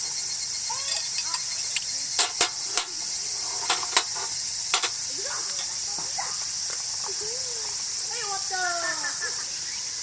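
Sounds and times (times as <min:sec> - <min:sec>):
insects chirping chorus: 0:00.0 - 0:10.0
sharp clicks or knocks: 0:01.2 - 0:03.0, 0:03.6 - 0:05.0.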